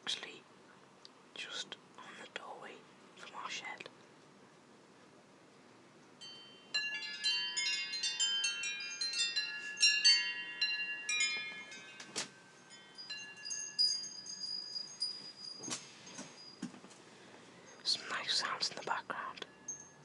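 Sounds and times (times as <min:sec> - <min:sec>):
wind chimes ringing: 0:06.2 - 0:20.0.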